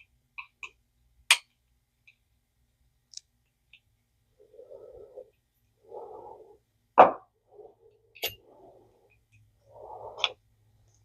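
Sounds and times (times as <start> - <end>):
muffled rubbing: 4.4 - 6.6, 9.7 - 10.4.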